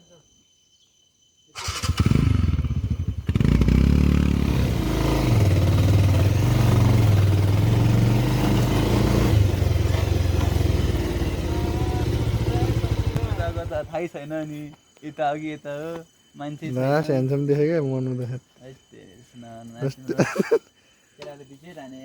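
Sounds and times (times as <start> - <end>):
motorcycle engine revving: 1.6 - 13.9.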